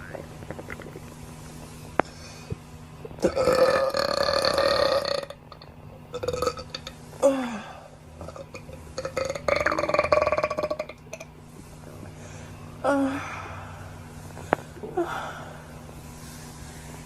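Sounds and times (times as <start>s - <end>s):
person burping loudly: 3.2s - 5.5s, 6.1s - 7.4s, 8.2s - 11.3s.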